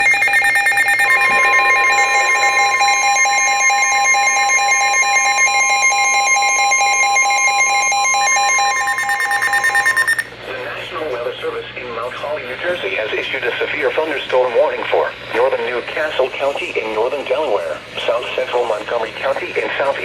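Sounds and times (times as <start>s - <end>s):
rapid electronic beeping: 0.0s - 10.3s
steady electronic warning tone: 0.0s - 10.3s.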